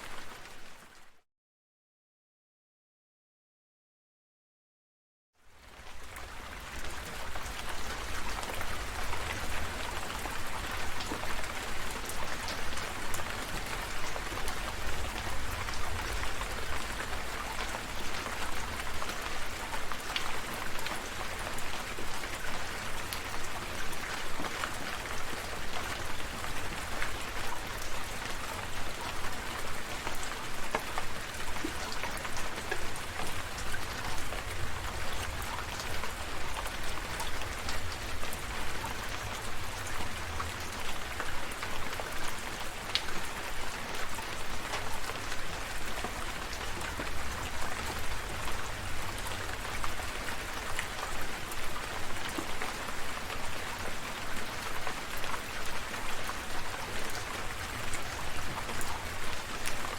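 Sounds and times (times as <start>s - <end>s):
rain falling: 0.0s - 1.1s, 5.5s - 59.9s
raindrops ticking on surface: 5.8s - 53.6s.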